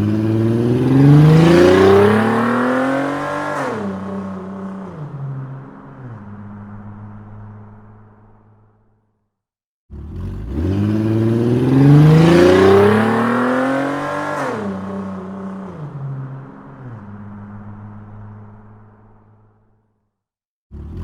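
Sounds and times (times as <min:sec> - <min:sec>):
sports car engine revving: 0:00.0 - 0:07.2, 0:09.9 - 0:16.8.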